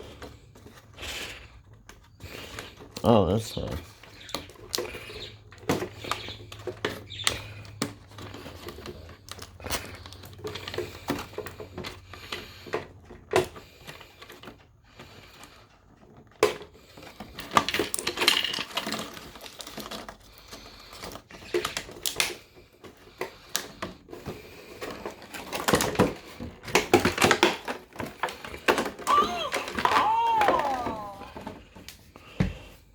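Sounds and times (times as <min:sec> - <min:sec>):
plastic toy clicking and rattling: 0:15.4 - 0:31.6.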